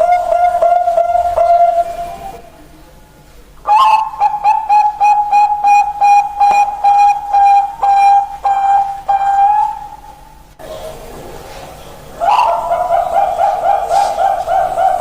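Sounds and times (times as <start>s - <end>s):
mynah bird whistling: 0.0s - 2.5s, 3.6s - 10.3s, 12.2s - 15.0s.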